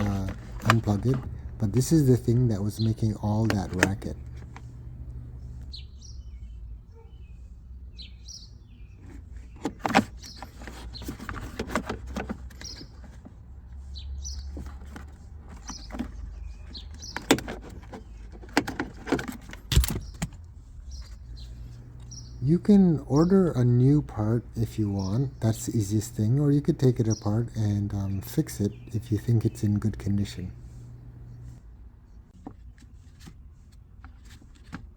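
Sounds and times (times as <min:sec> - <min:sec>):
plastic housing clicks and knocks: 0:00.0 - 0:05.7.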